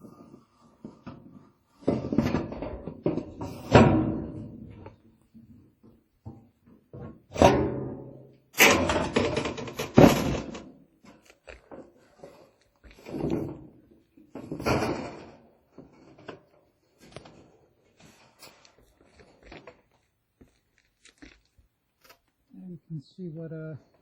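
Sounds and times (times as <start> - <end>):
thuds and rattles on metal roof: 0.9 - 5.0, 6.3 - 10.8, 13.0 - 16.5.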